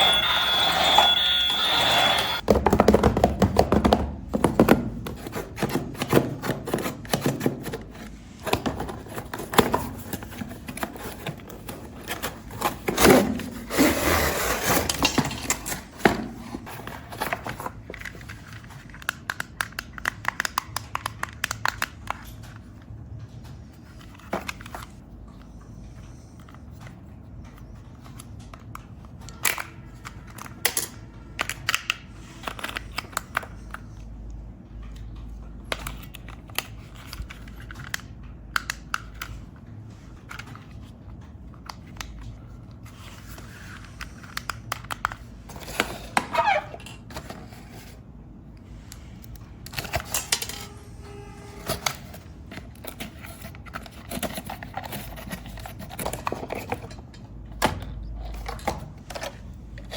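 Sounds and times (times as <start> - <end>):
plastic toy parts clicking: 17.9 - 22.5.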